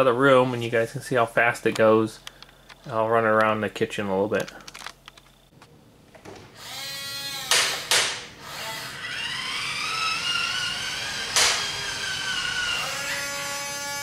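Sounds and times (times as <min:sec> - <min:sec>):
small electric motor whining: 0:06.6 - 0:14.0.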